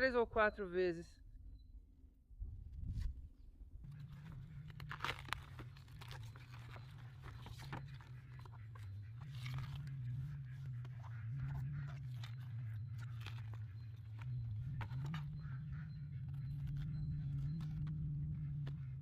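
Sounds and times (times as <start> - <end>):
steady low hum: 0.0 - 19.0
vegetable skins tearing and crunching: 3.9 - 8.4.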